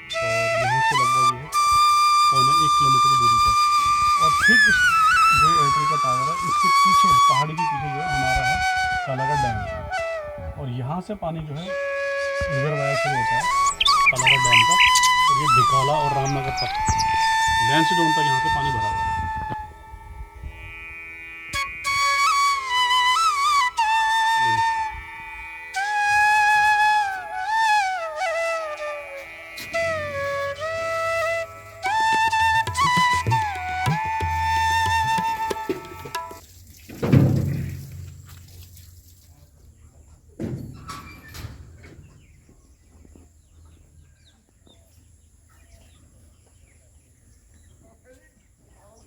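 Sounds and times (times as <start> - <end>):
flute melody: 0.0 - 20.6, 21.5 - 36.4
faint bird chirps and clucks: 13.3 - 18.3.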